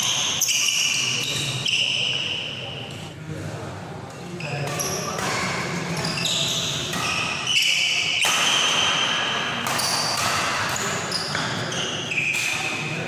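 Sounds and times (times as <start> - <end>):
voices: 0.0 - 13.0
rackets striking shuttlecock: 4.6 - 5.8, 6.8 - 11.6, 12.2 - 12.8.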